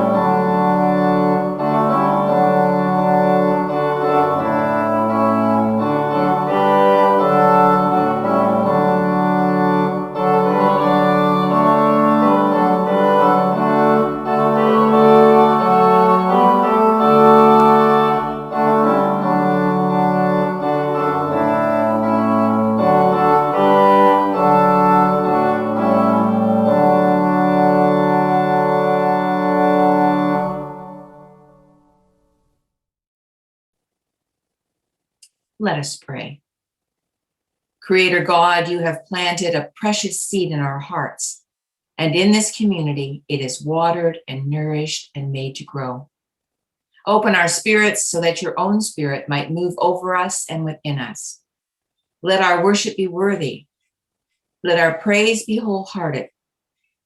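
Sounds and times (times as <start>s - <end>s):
church organ chords: 0.0s - 31.8s.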